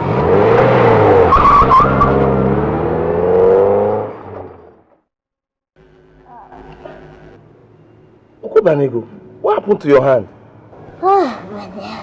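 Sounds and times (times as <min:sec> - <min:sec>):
car engine revving: 0:00.0 - 0:04.9.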